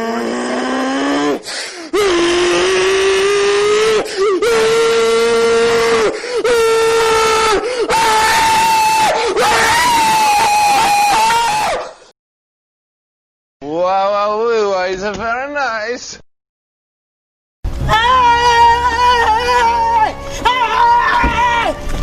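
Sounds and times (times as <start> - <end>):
person screaming: 0.0 - 12.0, 17.8 - 21.8.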